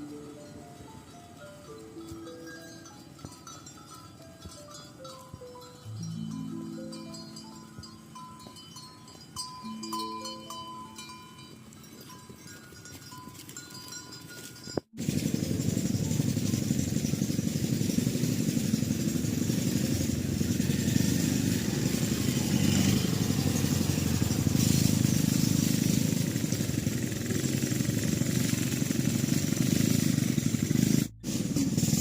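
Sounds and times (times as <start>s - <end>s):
small engine running: 0.0s - 32.0s.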